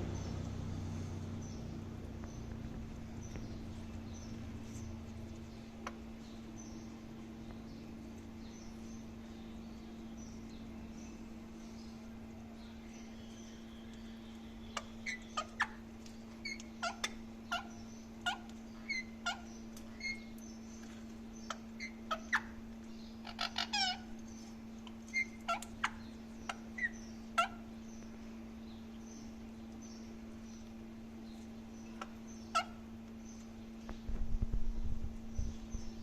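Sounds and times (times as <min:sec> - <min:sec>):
parrot chirping and clicking: 0:14.7 - 0:20.5, 0:21.5 - 0:28.1.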